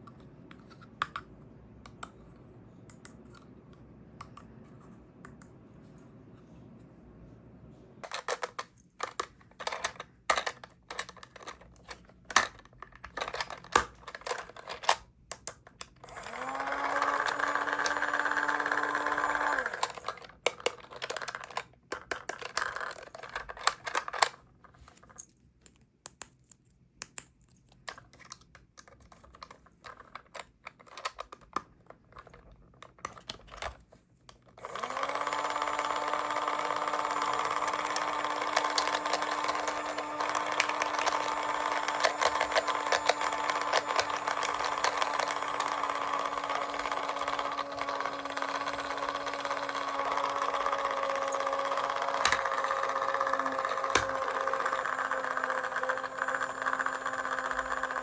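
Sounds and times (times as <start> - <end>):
plastic toy pieces clicking: 8.0 - 24.4, 27.0 - 33.8, 34.7 - 58.0
small motor whirring: 16.1 - 20.2, 34.6 - 58.0.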